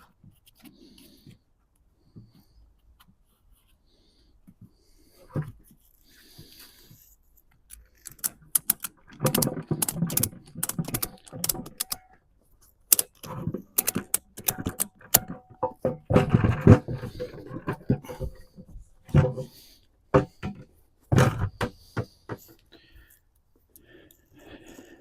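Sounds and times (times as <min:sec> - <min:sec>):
ratchet strap clicking: 0:07.7 - 0:12.1, 0:12.9 - 0:15.3
handling noise: 0:13.0 - 0:22.7.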